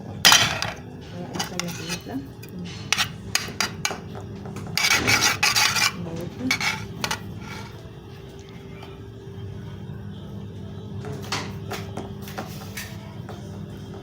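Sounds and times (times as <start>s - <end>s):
spoon scraping a pan: 0.3s - 4.1s, 4.8s - 7.8s.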